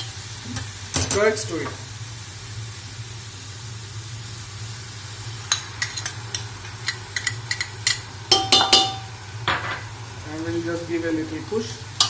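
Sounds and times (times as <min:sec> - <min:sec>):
metal spoon tapping steel pot: 0:05.5 - 0:09.1.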